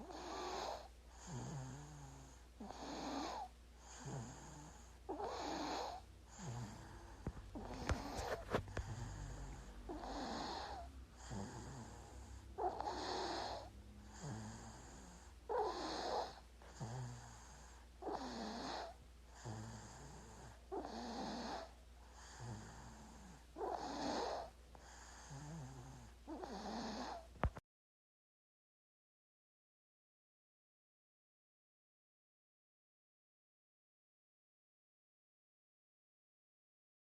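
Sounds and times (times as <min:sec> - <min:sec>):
baby snoring: 0:00.0 - 0:27.6.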